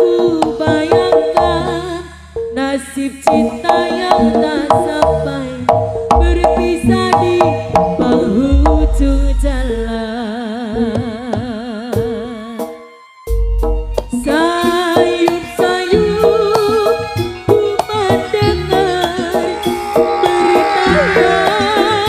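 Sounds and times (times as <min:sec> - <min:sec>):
hand drum strokes: 0:18.0 - 0:22.0
melodic notes: 0:18.6 - 0:22.0
long wavering held note: 0:19.2 - 0:22.0.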